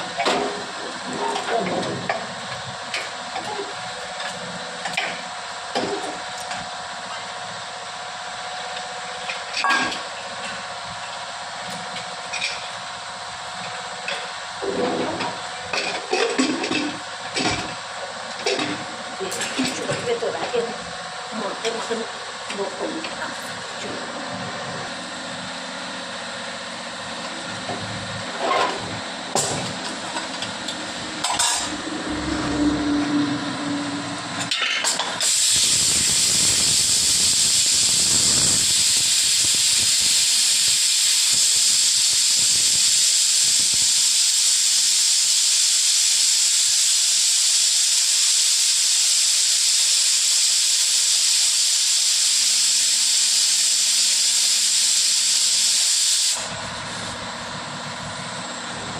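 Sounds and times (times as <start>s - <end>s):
cooking hiss on stove: 34.9s - 57.2s.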